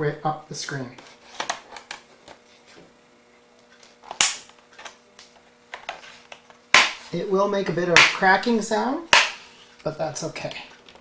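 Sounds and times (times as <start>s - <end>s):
loud plastic cracks: 4.1s - 5.9s
plastic clips snapping: 4.1s - 5.9s.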